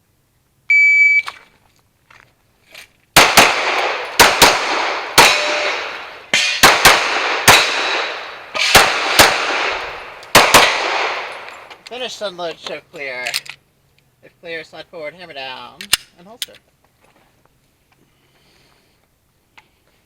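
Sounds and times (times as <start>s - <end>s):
pistol shots echoing: 3.2s - 11.7s.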